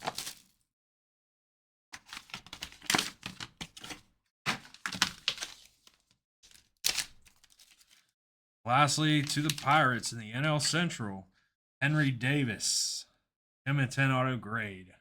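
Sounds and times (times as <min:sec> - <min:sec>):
cards in plastic holders handled: 0:02.0 - 0:08.1, 0:09.1 - 0:09.8.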